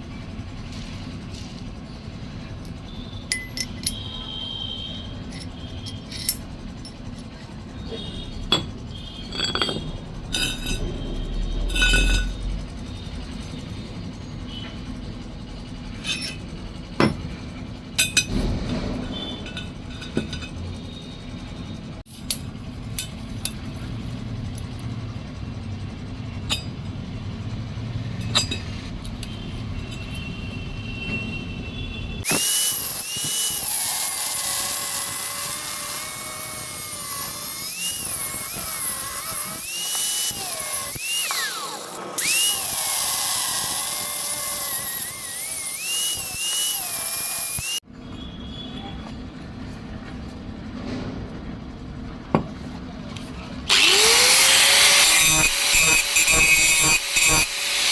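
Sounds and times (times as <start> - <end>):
power tool whining on metal: 32.2 - 47.8, 53.7 - 57.9.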